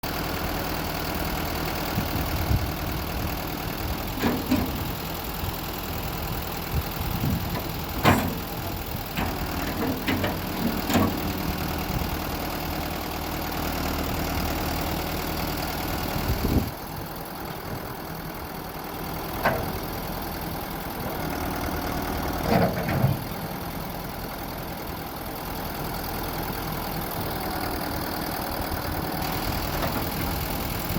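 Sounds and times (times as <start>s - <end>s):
tractor diesel engine idling: 0.0s - 30.9s
short knocks and clanks: 7.5s - 11.3s.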